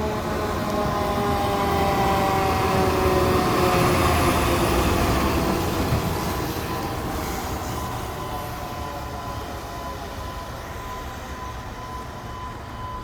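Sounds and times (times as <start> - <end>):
street noise: 0.0 - 13.0
high-pitched fire alarm tone: 6.2 - 13.0.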